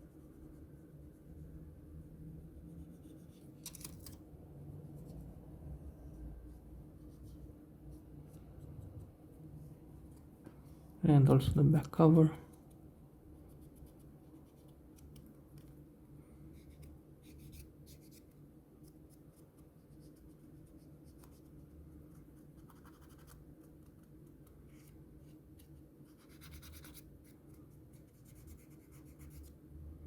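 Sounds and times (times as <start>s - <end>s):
cotton swab scratching: 16.6s - 24.0s, 25.6s - 29.6s.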